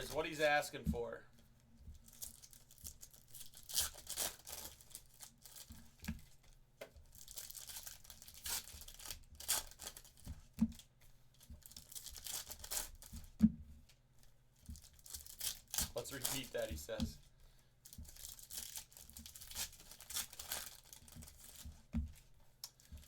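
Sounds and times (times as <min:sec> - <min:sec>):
card pack wrappers tearing: 0:02.1 - 0:05.7, 0:07.1 - 0:10.2, 0:14.9 - 0:17.0, 0:18.1 - 0:21.6.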